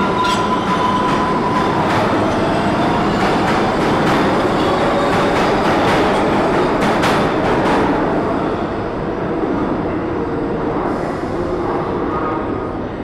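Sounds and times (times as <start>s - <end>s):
rail clicks: 0.0s - 8.1s
subway train rumbling: 0.0s - 13.0s.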